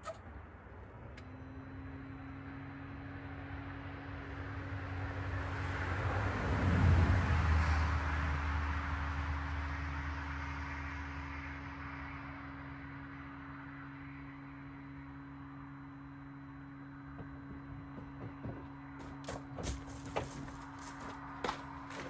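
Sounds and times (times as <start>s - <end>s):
vehicle driving past: 1.4s - 22.0s
steady low hum: 8.4s - 22.0s.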